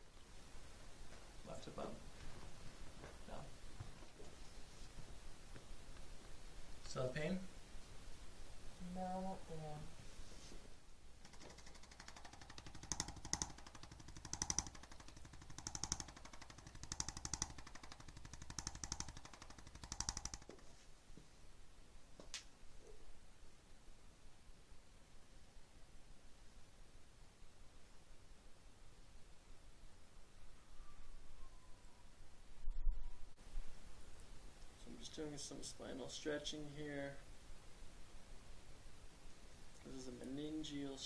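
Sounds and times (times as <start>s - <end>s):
adjusting instrument tapping rapidly: 11.2s - 20.7s
faint thin high tone: 30.5s - 32.0s.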